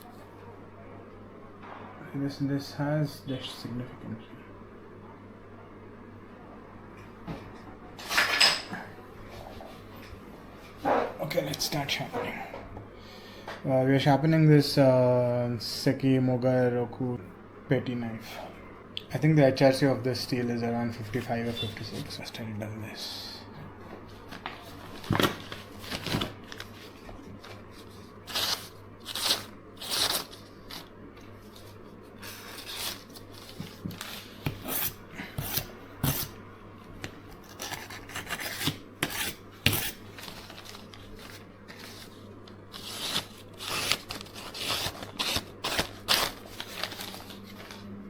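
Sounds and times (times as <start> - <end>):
knife edge scraping: 34.5 - 36.4, 37.4 - 40.0.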